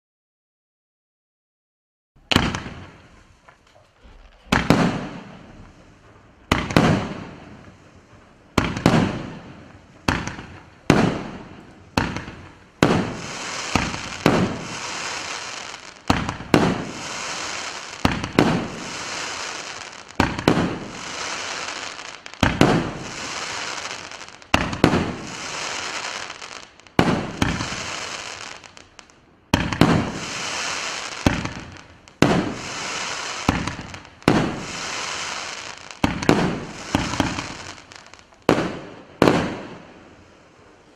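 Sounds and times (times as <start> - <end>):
fireworks launch reports: 2.2 - 29.0, 29.6 - 40.9
crackling stars bursting: 2.4 - 8.8.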